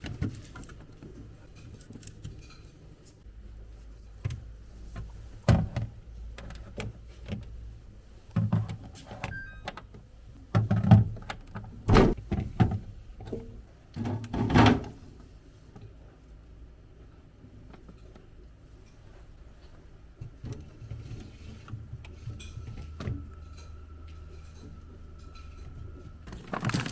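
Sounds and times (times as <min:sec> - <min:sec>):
fridge door: 0:11.9 - 0:12.2, 0:14.0 - 0:15.0
groceries knocking and thudding: 0:11.9 - 0:12.8, 0:26.3 - 0:26.9.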